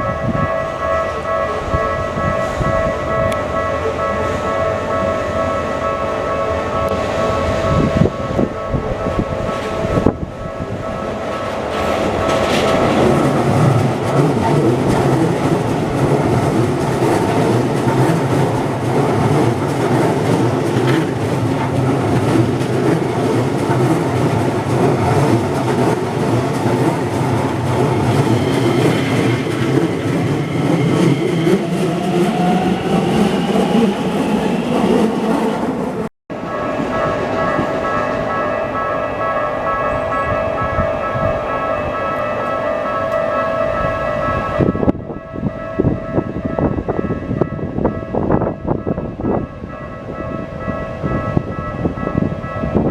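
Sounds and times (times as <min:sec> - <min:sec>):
crossing warning bell: 0:00.0 - 0:35.6, 0:36.3 - 0:52.9
rising train whine: 0:00.0 - 0:52.9
train wheels clattering: 0:09.2 - 0:40.0.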